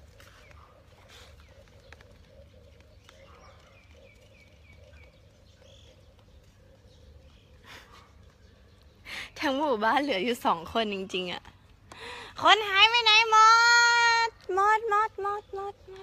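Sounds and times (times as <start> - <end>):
bird chirping: 0.0 - 11.3.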